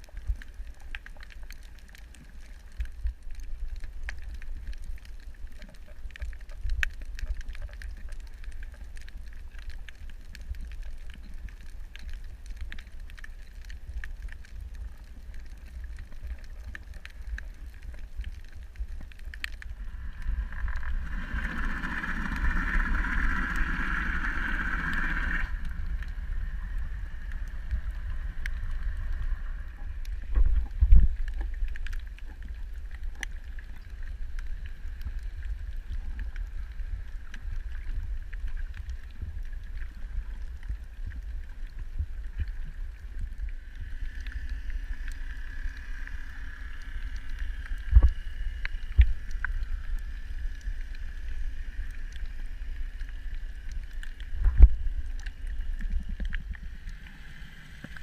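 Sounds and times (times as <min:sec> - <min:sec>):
faint steady hum: 0:00.0 - 0:58.0
underwater water rumble: 0:00.0 - 0:58.0
water rushing: 0:14.8 - 0:58.0.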